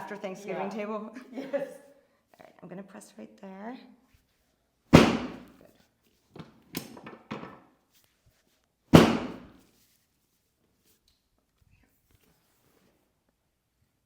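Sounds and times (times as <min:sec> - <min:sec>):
table section slamming down: 0:05.0 - 0:05.5, 0:09.0 - 0:09.6.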